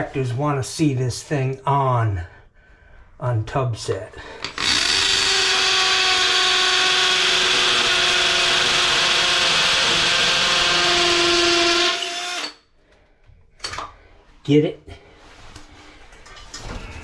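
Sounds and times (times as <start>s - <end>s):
electric power drill running: 4.4s - 12.6s.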